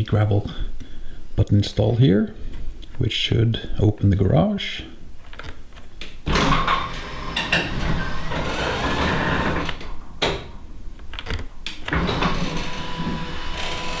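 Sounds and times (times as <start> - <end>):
garage door rattling: 6.3 - 9.8, 11.9 - 13.9
sharp clicks and knocks: 9.6 - 12.6
motor hum: 12.0 - 14.0.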